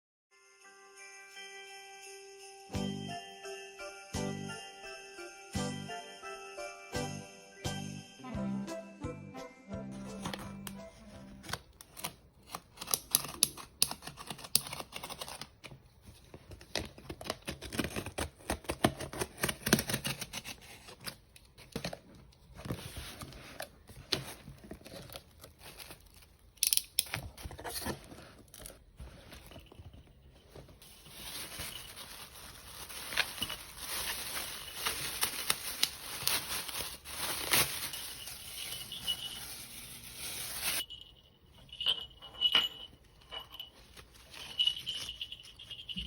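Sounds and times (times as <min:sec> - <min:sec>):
paper and plastic wrapping rustling: 0:10.1 - 0:26.5, 0:27.1 - 0:41.0, 0:43.6 - 0:46.0
packaging tearing: 0:31.1 - 0:40.8.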